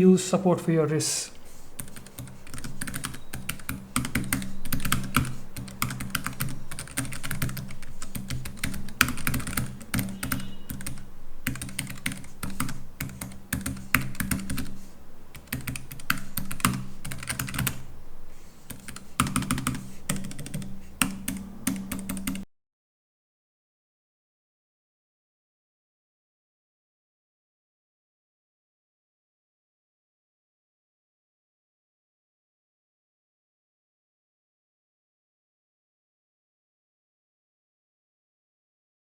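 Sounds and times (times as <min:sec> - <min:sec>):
mechanical keyboard typing: 0:01.8 - 0:17.9, 0:18.6 - 0:22.4.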